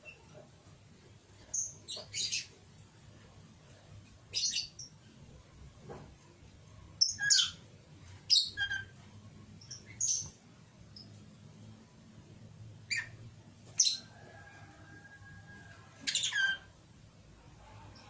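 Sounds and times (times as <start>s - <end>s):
lovebird chirping: 1.5s - 2.6s, 4.3s - 5.0s, 7.0s - 7.7s, 8.3s - 9.0s, 9.6s - 11.2s, 12.8s - 13.2s, 13.8s - 14.1s, 16.0s - 16.8s.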